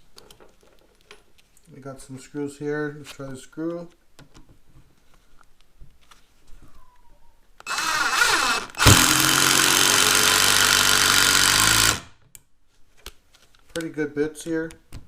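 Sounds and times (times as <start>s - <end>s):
impact driver driving screw: 7.6s - 12.2s.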